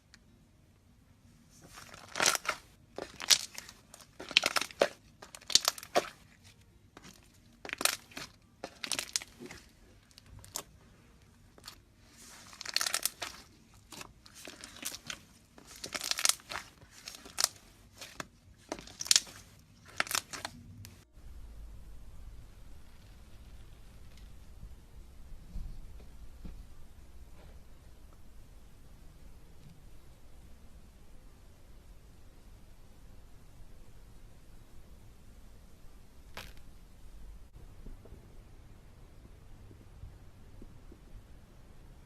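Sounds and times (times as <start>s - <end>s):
slime crackling and squishing: 1.6s - 21.0s.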